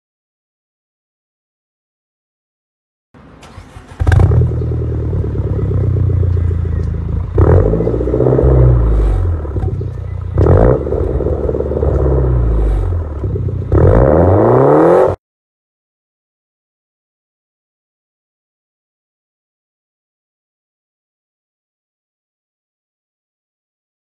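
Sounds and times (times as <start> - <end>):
engine revving: 3.4 - 15.2.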